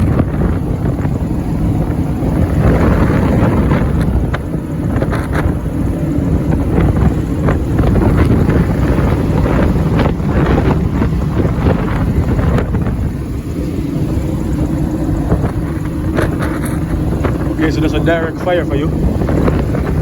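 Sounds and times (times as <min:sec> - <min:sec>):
air moving through heater: 0:00.0 - 0:20.0
gas burner flame rumbling: 0:00.0 - 0:20.0.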